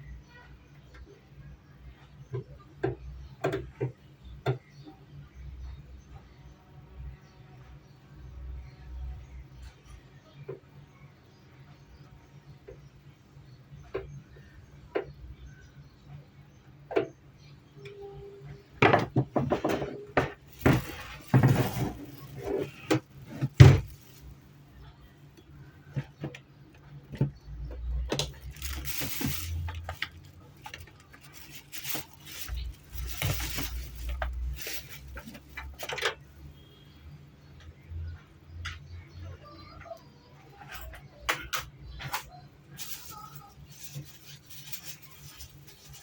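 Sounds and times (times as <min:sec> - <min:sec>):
rustling or sliding: 0:20.4 - 0:24.4, 0:28.4 - 0:35.8.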